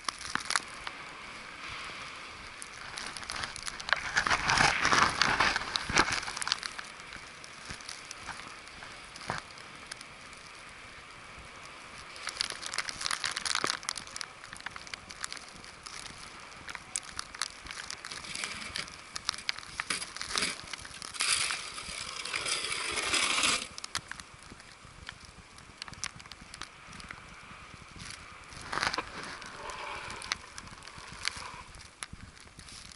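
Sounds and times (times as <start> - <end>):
footsteps crunching in snow: 12.0 - 32.9.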